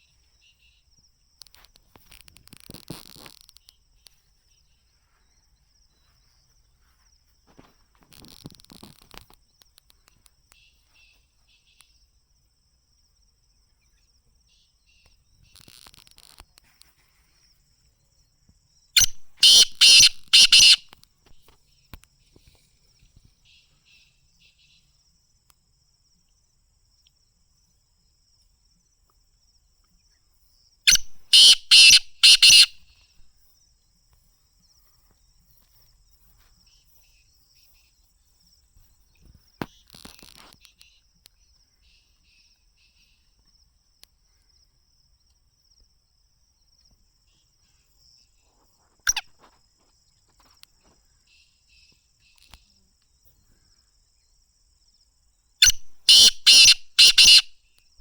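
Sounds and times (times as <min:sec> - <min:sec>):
insect trill: 0:00.0 - 0:58.0
bird calling harshly: 0:19.0 - 0:21.0, 0:30.9 - 0:33.0, 0:49.1 - 0:49.3, 0:55.6 - 0:57.6.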